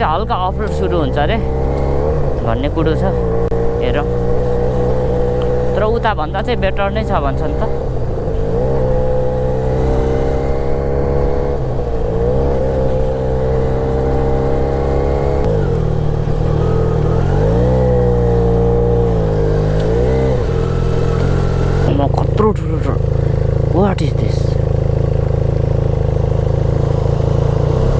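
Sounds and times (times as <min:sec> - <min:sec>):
motorcycle engine shifting gears: 0:00.0 - 0:27.9.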